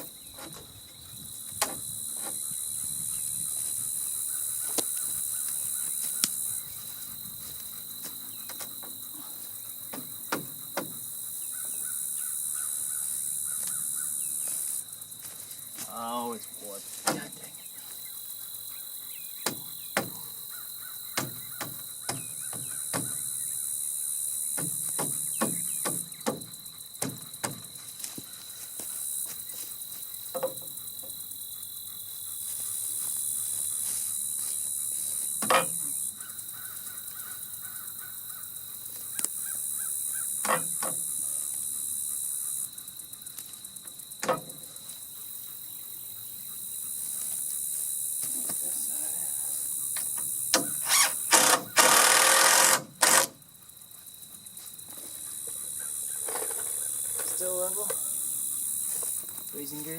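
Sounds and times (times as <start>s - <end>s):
high buzz of insects: 0.0s - 59.9s
crows cawing: 36.2s - 38.5s.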